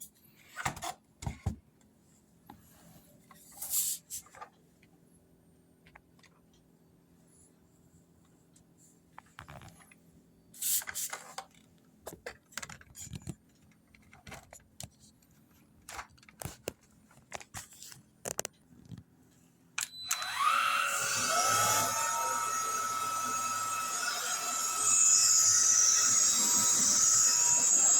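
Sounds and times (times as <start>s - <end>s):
plastic parts clicking and snapping: 18.2s - 19.0s
vacuum motor whining: 19.8s - 27.9s.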